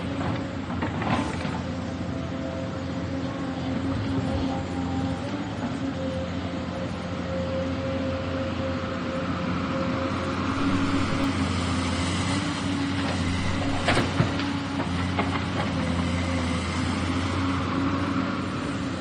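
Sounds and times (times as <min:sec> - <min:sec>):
excavator engine running: 0:09.8 - 0:19.0.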